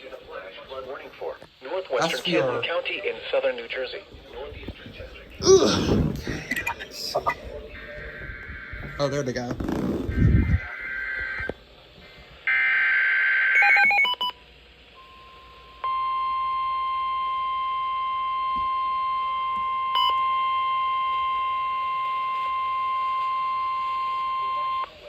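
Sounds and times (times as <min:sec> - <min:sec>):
steady warning alarm tone: 0:06.5 - 0:09.4.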